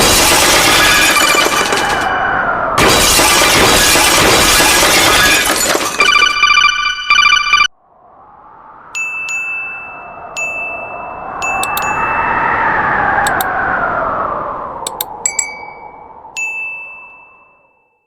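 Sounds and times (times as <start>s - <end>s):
single chime: 14.9s - 18.0s
jangle of bell-like tones: 15.2s - 18.0s.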